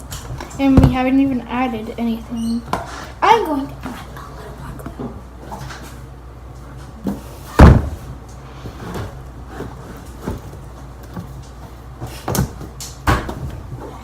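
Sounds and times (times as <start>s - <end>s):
loud thump: 7.6s - 8.0s.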